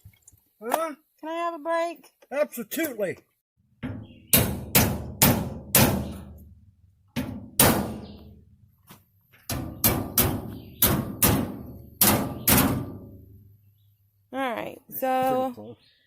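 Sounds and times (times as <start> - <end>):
hammer striking metal: 3.8 - 6.4, 7.2 - 8.2, 9.5 - 13.2.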